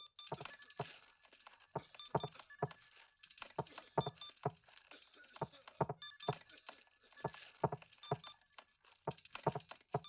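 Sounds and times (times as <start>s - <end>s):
short electronic beeps: 2.0s - 2.3s, 6.0s - 6.4s
sharp irregular clicks and knocks: 9.1s - 10.0s.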